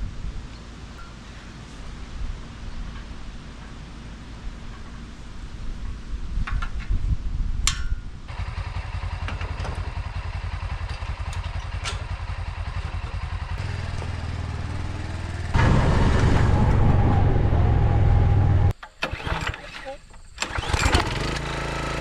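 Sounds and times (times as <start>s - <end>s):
small gas engine running: 8.3s - 22.0s.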